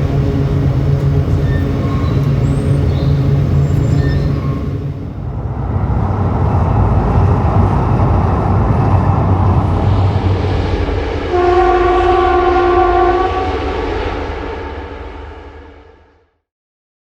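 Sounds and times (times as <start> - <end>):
train horn blast: 0.0 - 4.8, 11.2 - 14.2
train rumbling: 0.0 - 16.4.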